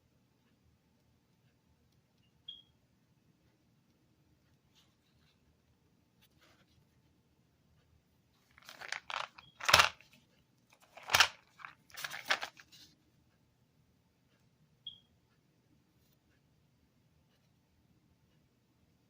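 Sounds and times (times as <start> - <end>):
packaging rustling and crinkling: 8.5 - 10.1, 10.8 - 12.8.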